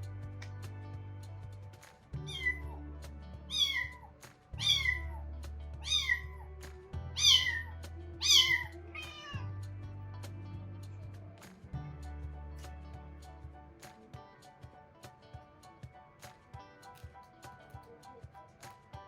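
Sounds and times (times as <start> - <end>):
background music: 0.0 - 19.0
kitten meowing: 2.2 - 2.8, 3.5 - 5.2, 5.8 - 6.5, 7.2 - 9.5.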